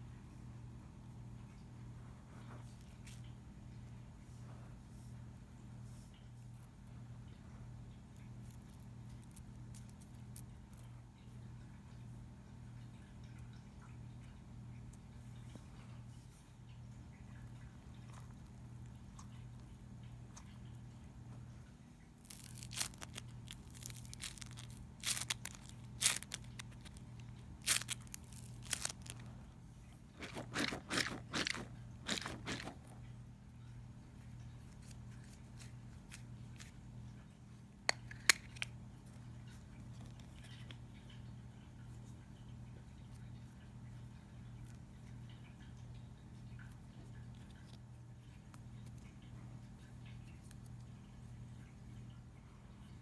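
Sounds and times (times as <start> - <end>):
fidget toy crunching and crackling: 22.2 - 29.4, 30.2 - 32.9.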